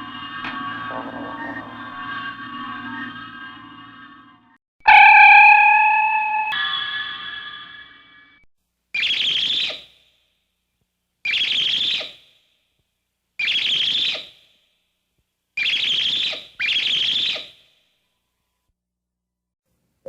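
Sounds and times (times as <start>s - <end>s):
trilling electronic alarm: 0.0s - 8.4s, 9.0s - 9.8s, 11.3s - 12.2s, 13.4s - 14.3s, 15.6s - 17.6s.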